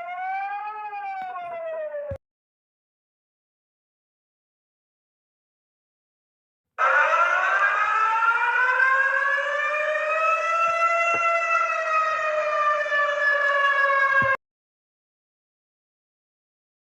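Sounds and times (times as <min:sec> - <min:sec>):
alarm siren wailing: 0:00.0 - 0:02.2, 0:06.8 - 0:14.4.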